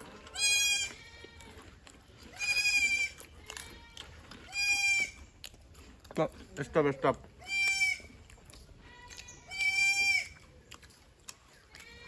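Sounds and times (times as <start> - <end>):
high-pitched animal calls: 0.2 - 1.6, 2.3 - 5.3, 7.4 - 8.3, 8.9 - 10.8.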